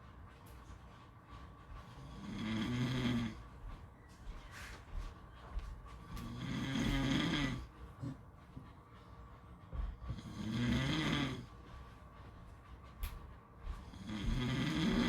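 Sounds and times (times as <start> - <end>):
quiet breathing: 1.0 - 12.5, 13.6 - 15.0
person snoring: 6.2 - 7.7, 10.2 - 11.4, 14.0 - 15.0.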